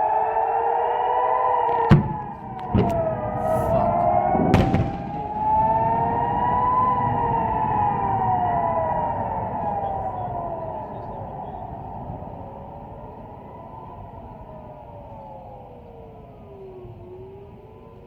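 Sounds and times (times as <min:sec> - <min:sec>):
air-raid sirens wailing: 0:00.0 - 0:18.0
sharp bangs: 0:01.7 - 0:07.4.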